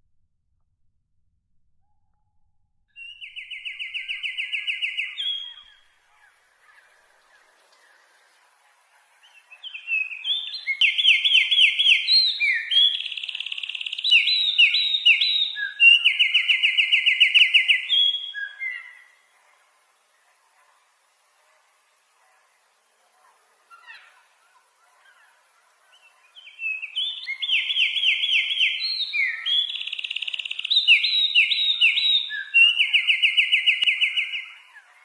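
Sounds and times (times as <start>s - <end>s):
songbird singing trills: 3.0s - 6.8s, 9.2s - 19.2s, 25.9s - 35.0s.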